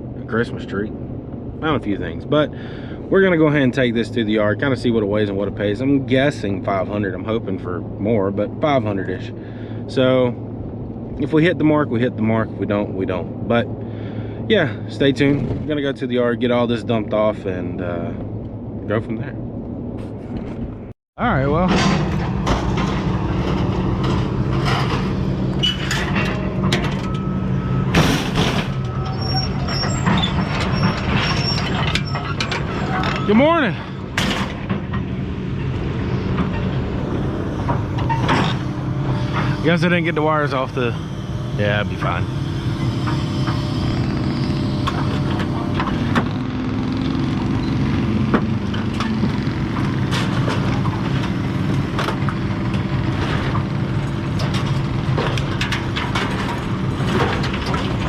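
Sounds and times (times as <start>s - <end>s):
vehicle engine humming: 0.0s - 58.0s
rattles and clanks: 15.2s - 15.9s, 21.4s - 58.0s.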